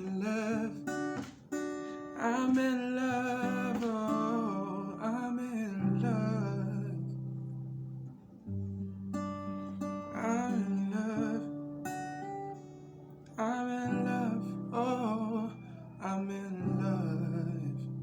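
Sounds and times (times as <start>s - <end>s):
man singing wordless runs: 0.0s - 1.4s, 2.0s - 7.2s, 10.1s - 11.5s, 13.4s - 17.9s
acoustic guitar chords: 0.0s - 18.0s.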